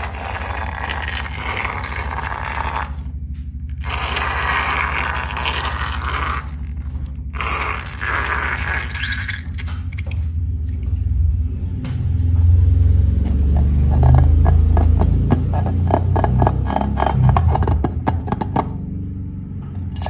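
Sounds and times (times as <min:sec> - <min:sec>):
slime squished by hand: 0:00.0 - 0:03.1, 0:03.7 - 0:10.9.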